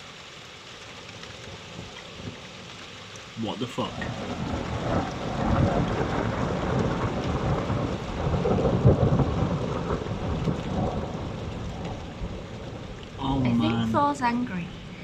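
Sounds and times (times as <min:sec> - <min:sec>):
steady rain: 0:00.0 - 0:15.0
thunder rumbling: 0:03.9 - 0:15.0.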